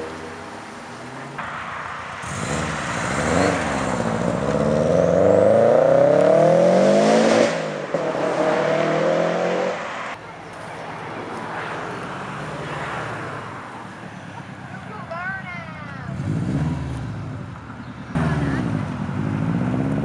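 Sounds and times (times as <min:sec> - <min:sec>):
car engine revving: 0:00.0 - 0:10.2, 0:16.1 - 0:20.0.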